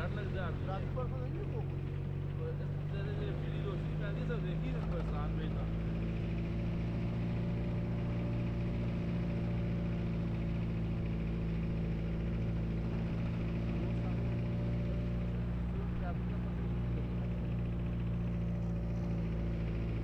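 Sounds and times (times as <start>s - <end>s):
engine humming steadily: 0.0s - 20.0s.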